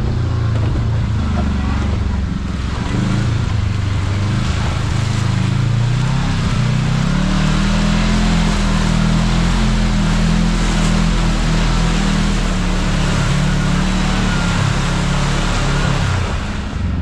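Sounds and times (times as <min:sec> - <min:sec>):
tyre and wind noise: 0:00.0 - 0:04.9
vehicle engine running: 0:00.0 - 0:17.0.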